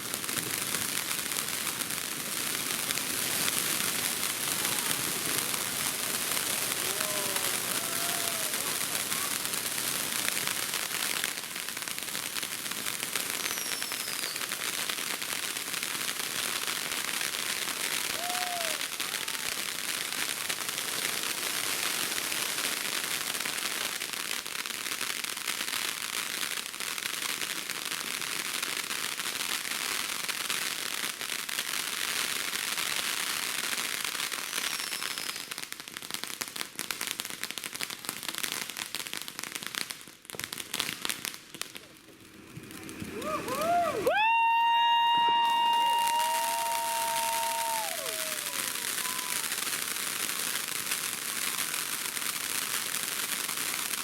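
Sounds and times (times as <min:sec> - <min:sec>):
ground fireworks crackling: 0:00.0 - 0:54.0
short firework whistles: 0:04.4 - 0:11.1, 0:13.0 - 0:15.4, 0:17.6 - 0:20.2, 0:34.3 - 0:35.7, 0:42.4 - 0:50.4.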